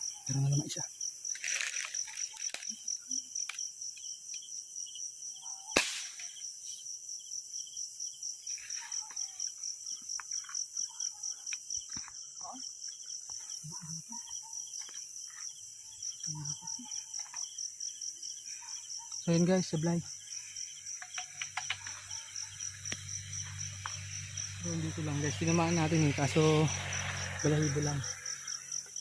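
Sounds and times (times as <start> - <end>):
crickets chirping: 0.0 - 29.0
air rifle shot: 5.8 - 6.3.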